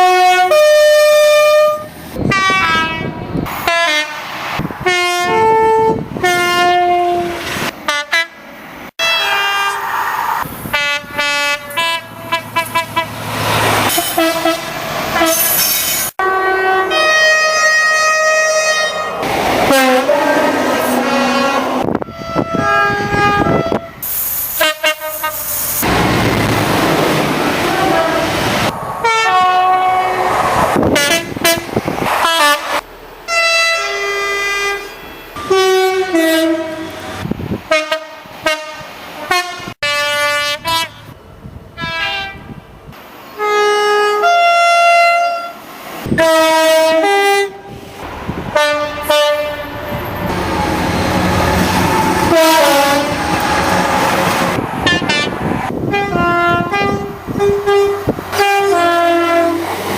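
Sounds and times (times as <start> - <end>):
two-tone train horn blasts: 0.0 - 8.4, 9.0 - 9.8, 10.7 - 13.2, 13.9 - 25.9, 29.0 - 41.2, 41.8 - 42.6, 43.4 - 47.8, 48.5 - 59.7
train running rumble: 19.1 - 34.2, 45.7 - 59.9.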